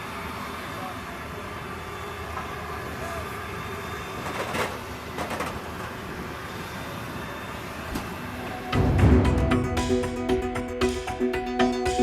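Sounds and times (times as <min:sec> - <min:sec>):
jet aircraft noise in cockpit: 0:00.0 - 0:09.3.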